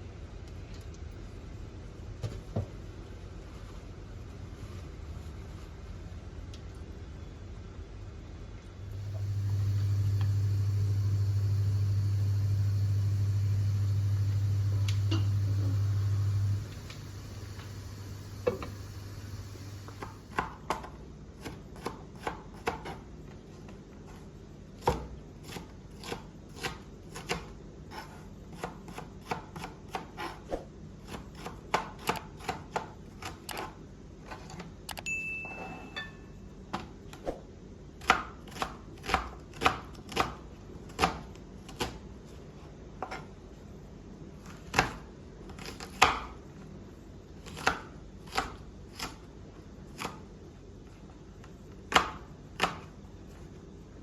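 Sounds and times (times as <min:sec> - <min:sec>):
knife chopping food: 0:19.9 - 0:23.1, 0:24.8 - 0:34.6, 0:38.0 - 0:42.1, 0:44.4 - 0:46.4, 0:47.4 - 0:50.3, 0:51.8 - 0:53.0.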